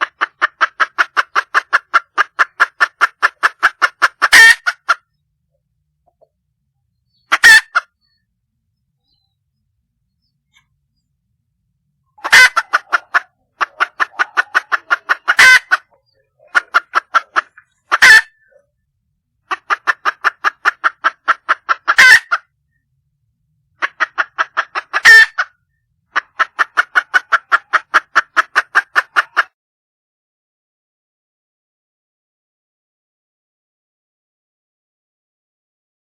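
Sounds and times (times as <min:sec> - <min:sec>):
hen rapid clucking: 0:00.0 - 0:05.1, 0:07.1 - 0:08.2, 0:12.2 - 0:18.7, 0:19.5 - 0:22.5, 0:23.8 - 0:29.6.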